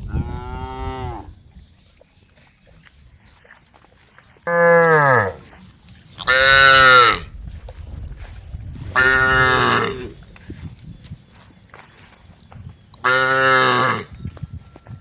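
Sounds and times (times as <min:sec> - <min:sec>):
cattle mooing: 0:04.4 - 0:05.4, 0:13.0 - 0:14.1.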